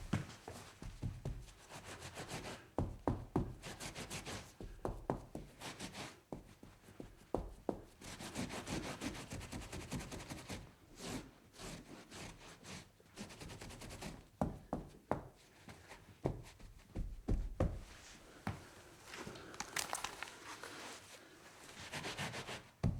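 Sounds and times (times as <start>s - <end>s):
rubbing and wiping: 15.7s - 22.8s.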